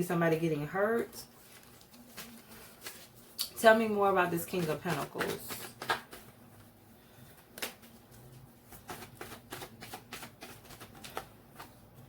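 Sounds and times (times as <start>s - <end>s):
cards snapping and flicking: 5.6s - 6.3s.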